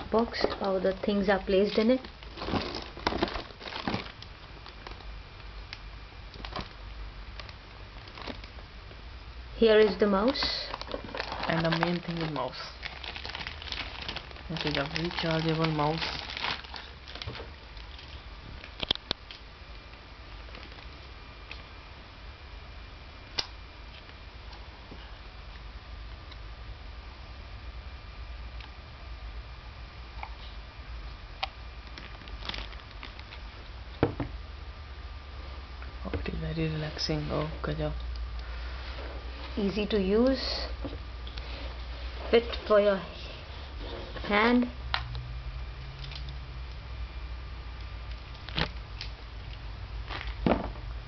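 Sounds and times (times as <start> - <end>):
steady low hum: 0.0 - 51.0
packaging rustling and knocking: 2.0 - 4.2, 9.8 - 18.1.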